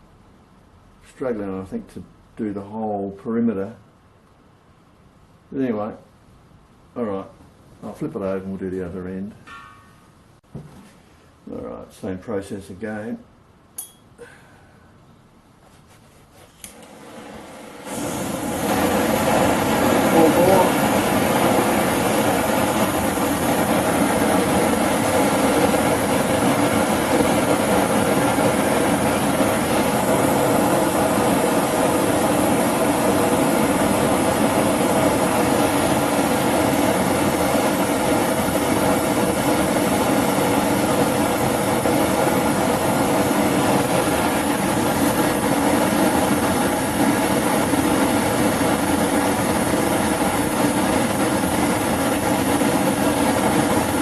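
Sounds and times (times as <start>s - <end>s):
gas torch burning with rushing noise: 16.6s - 54.0s.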